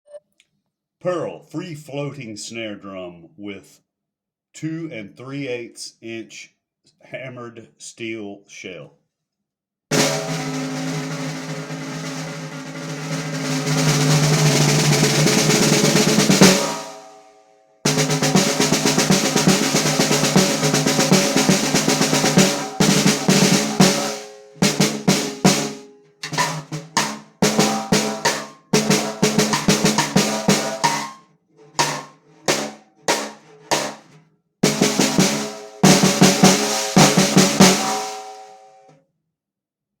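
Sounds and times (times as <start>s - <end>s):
snare drum rolls: 9.9s - 17.0s, 17.9s - 31.2s, 31.8s - 38.6s.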